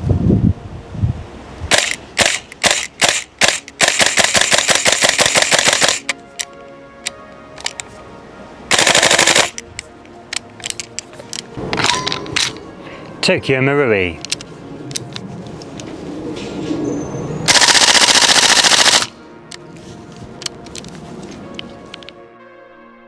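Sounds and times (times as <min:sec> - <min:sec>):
airsoft rifle firing: 0:01.7 - 0:06.1, 0:08.7 - 0:09.6, 0:17.5 - 0:19.1.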